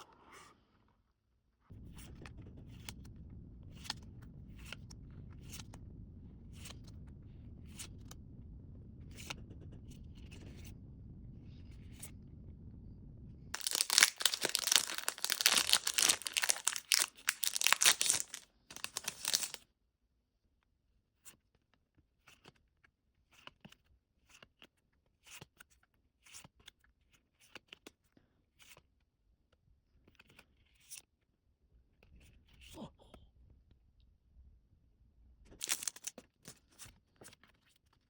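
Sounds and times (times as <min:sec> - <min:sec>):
foil pack crinkling and tearing: 0:13.6 - 0:19.6, 0:35.6 - 0:36.1
cards clicking and tapping: 0:35.6 - 0:36.1.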